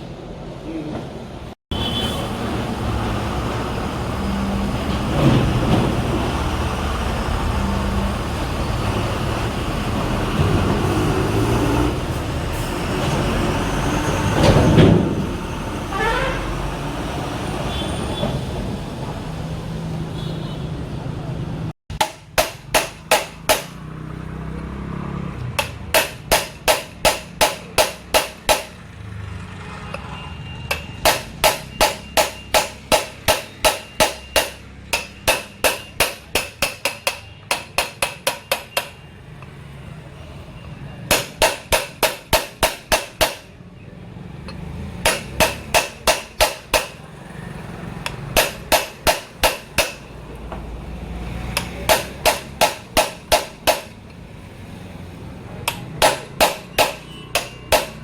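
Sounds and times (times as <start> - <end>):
hammer ringing on metal: 30.7 - 39.0, 41.1 - 43.5, 45.0 - 47.0, 48.0 - 50.1, 51.6 - 54.0, 55.7 - 58.0.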